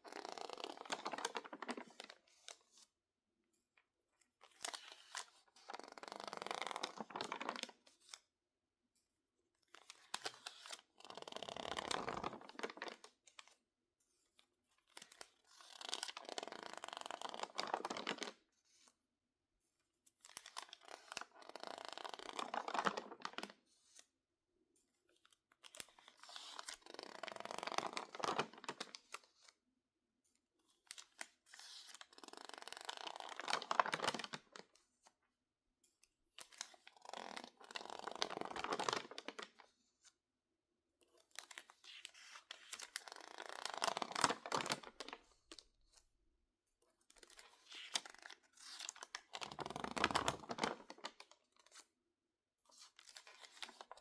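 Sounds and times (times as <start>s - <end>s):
magazine pages crinkling: 22.0s - 23.5s, 37.0s - 39.5s, 41.4s - 45.2s, 47.3s - 51.8s.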